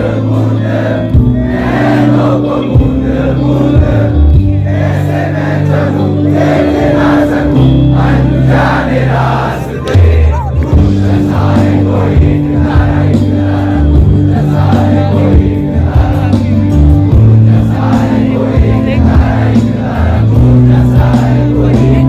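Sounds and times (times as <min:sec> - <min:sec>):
live band music: 0:00.0 - 0:22.0
voices singing: 0:00.0 - 0:22.0.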